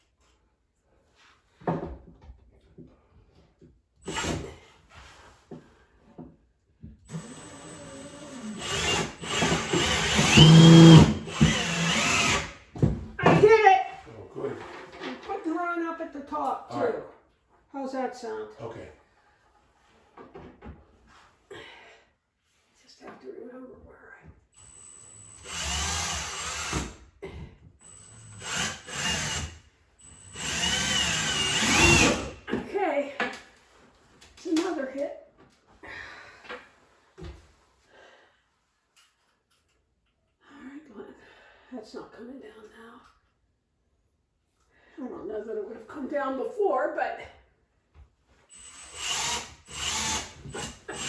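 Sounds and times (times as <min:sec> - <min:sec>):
cordless drill driving screw: 0:04.1 - 0:04.5, 0:07.1 - 0:12.6, 0:24.6 - 0:27.0, 0:27.8 - 0:32.4, 0:48.5 - 0:51.0.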